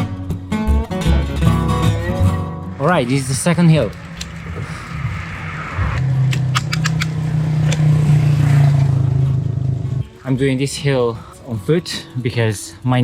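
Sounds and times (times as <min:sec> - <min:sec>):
vehicle engine hum: 0:00.2 - 0:13.0
sharp clicks: 0:06.2 - 0:07.9.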